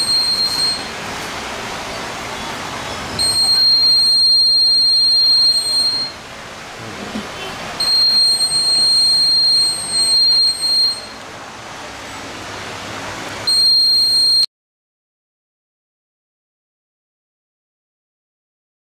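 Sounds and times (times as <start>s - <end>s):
door alarm buzzer tone: 0.0s - 1.0s, 3.1s - 6.2s, 7.8s - 11.2s, 13.4s - 14.5s.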